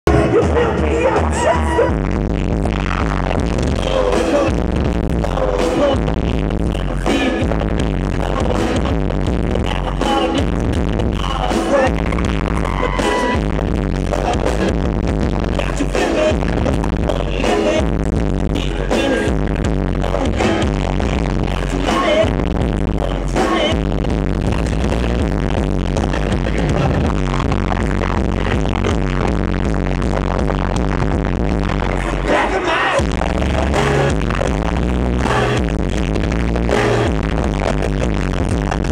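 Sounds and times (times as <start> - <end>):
live band playing pop song with vocals: 0.1 - 2.0, 3.6 - 13.4, 14.0 - 14.7, 15.4 - 23.9, 31.8 - 38.8.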